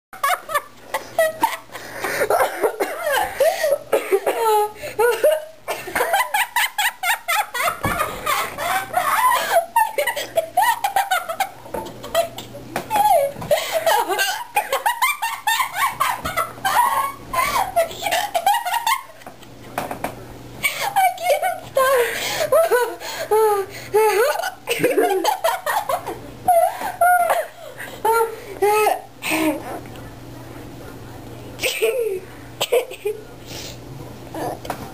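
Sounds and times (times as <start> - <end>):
little boy laughing: 0.2 - 19.2, 20.7 - 29.6.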